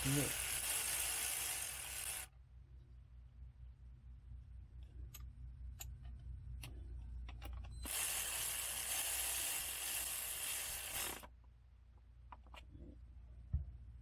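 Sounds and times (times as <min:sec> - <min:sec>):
loud steady hiss: 0:00.0 - 0:02.3.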